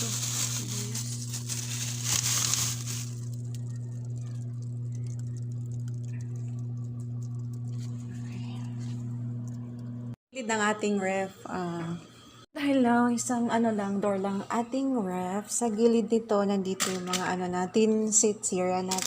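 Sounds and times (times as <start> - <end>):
packaging crinkling and rustling: 0.0 - 6.2
steady low hum: 0.0 - 10.2.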